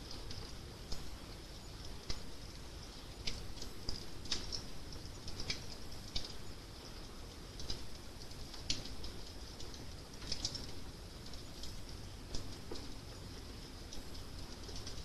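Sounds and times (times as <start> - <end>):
low rumble of burning: 0.0 - 15.0
wood fire crackling: 0.0 - 15.0.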